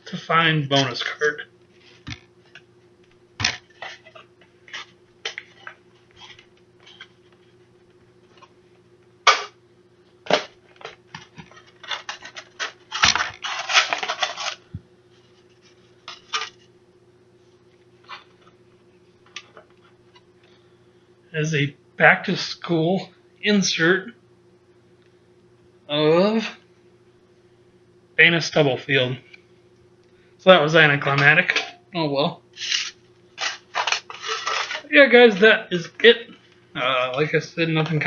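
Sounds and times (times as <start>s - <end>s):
faint steady hum: 0.0s - 38.0s
styrofoam and cardboard scraping: 11.8s - 14.6s, 32.6s - 34.9s.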